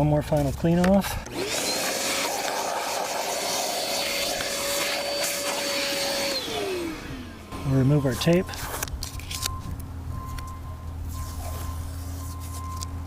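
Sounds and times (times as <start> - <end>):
vacuum cleaner running: 1.3 - 8.2.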